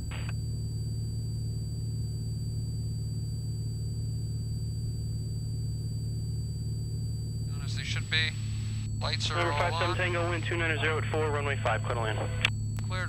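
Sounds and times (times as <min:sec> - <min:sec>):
aircraft engine and propeller drone: 0:07.5 - 0:13.0.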